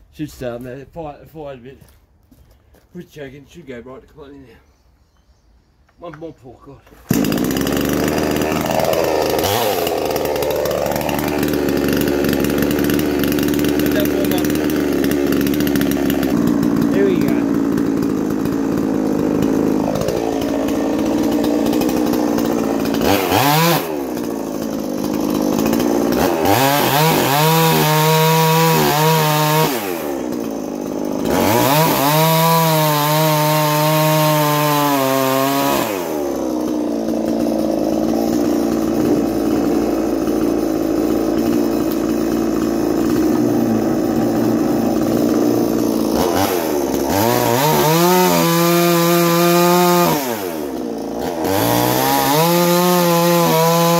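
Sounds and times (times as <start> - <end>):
chainsaw idling and revving: 6.8 - 53.9.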